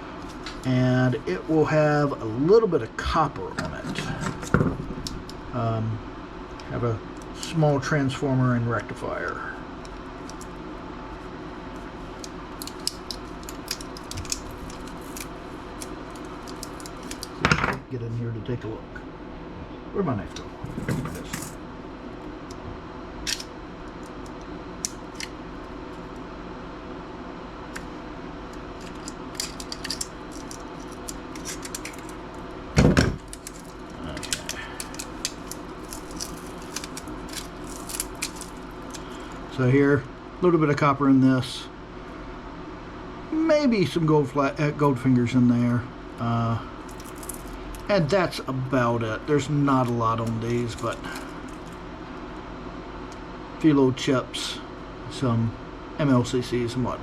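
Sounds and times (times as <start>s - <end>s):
steady low hum: 0.0s - 57.0s
small laptop parts clicking: 12.2s - 17.4s, 28.8s - 32.2s, 33.2s - 39.0s.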